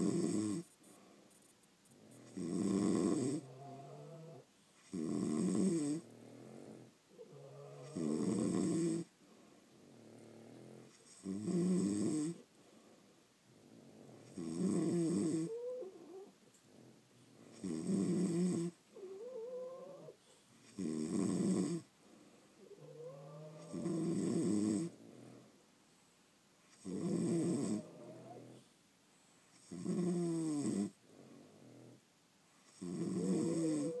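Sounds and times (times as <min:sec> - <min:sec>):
dog snoring: 0:00.0 - 0:00.8, 0:02.0 - 0:09.1, 0:09.8 - 0:12.4, 0:13.5 - 0:21.9, 0:22.6 - 0:25.4, 0:26.7 - 0:28.7, 0:29.5 - 0:32.0, 0:32.6 - 0:34.0.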